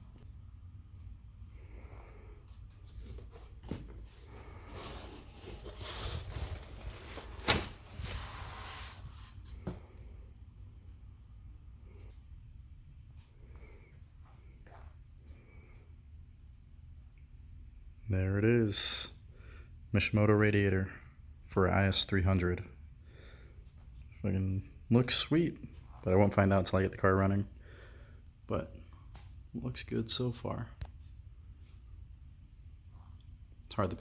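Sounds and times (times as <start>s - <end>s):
packaging rustling and scraping: 2.8s - 9.8s.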